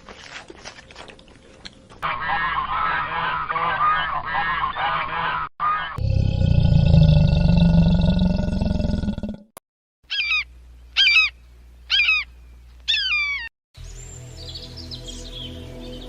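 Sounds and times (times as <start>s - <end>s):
high-pitched animal calls: 10.1s - 12.3s
soft background music: 13.8s - 16.0s.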